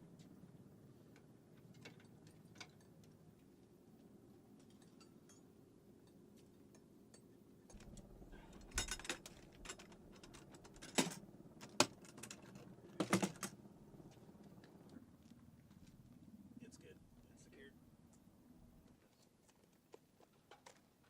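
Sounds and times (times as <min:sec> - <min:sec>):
faint steady hum: 0:00.0 - 0:21.0
metal clicks and clanks: 0:06.7 - 0:13.6.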